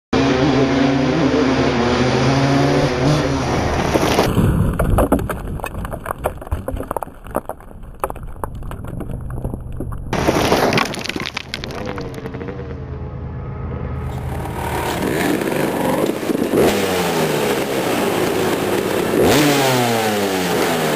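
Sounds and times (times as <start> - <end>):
sharp crackling and clatter: 3.8 - 12.8, 14.0 - 20.9
dirt bike engines revving: 14.0 - 20.9.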